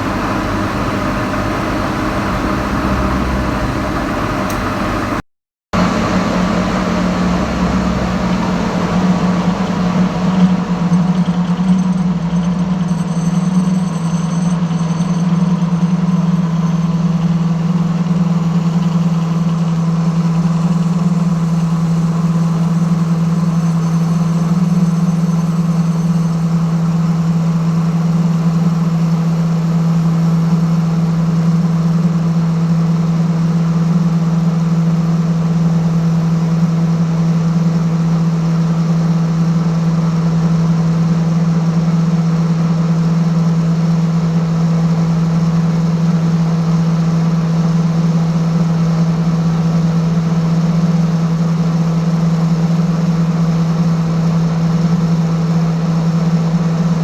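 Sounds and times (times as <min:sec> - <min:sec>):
lathe motor hum: 0:00.0 - 0:05.2.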